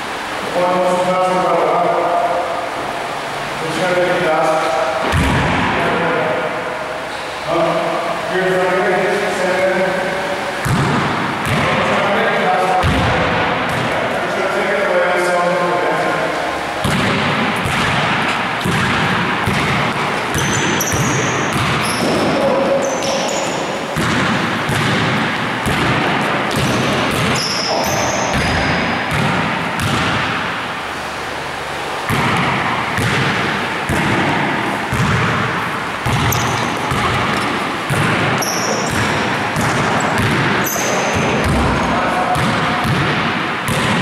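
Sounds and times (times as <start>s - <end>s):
basketballs bouncing on court: 5.0s - 5.7s, 10.6s - 12.1s, 12.8s - 14.1s, 16.8s - 30.5s, 32.1s - 44.0s
shoe squeaks: 20.4s - 23.8s, 26.6s - 28.9s, 36.2s - 37.6s, 38.4s - 39.0s, 40.6s - 41.3s.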